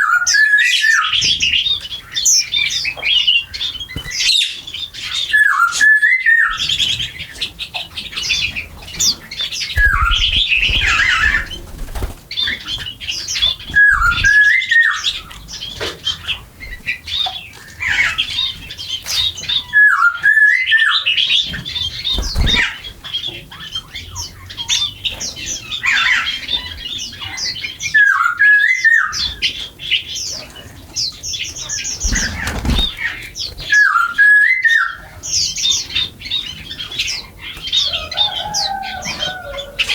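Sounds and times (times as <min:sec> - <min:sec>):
small birds chirping and squawking: 0:00.0 - 0:39.9
wings fluttering: 0:03.8 - 0:04.5, 0:08.9 - 0:14.9, 0:21.5 - 0:23.1, 0:31.8 - 0:33.9.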